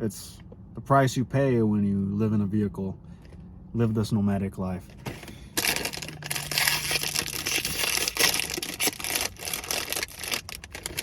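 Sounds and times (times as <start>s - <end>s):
plastic packaging crinkling: 5.5s - 11.0s.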